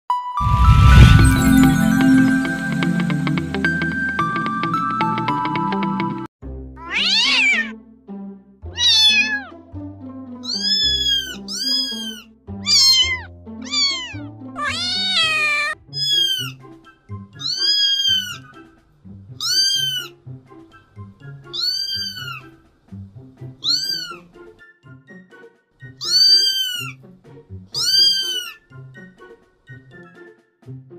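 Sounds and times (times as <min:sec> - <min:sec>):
soft background music: 0:00.3 - 0:30.9
cat meowing: 0:06.8 - 0:07.8, 0:08.7 - 0:09.6, 0:10.4 - 0:16.6, 0:17.4 - 0:18.5, 0:19.4 - 0:20.1, 0:21.5 - 0:22.5, 0:23.6 - 0:24.2, 0:26.0 - 0:27.0, 0:27.7 - 0:28.6.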